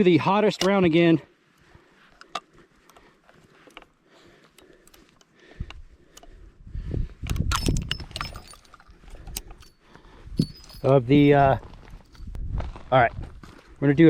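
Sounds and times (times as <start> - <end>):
metallic clicks and clinking: 7.2 - 12.4.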